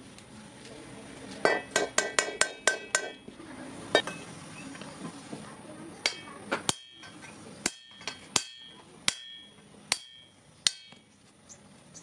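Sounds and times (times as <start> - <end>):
hammer striking sheet iron: 1.4 - 3.2, 6.1 - 11.0.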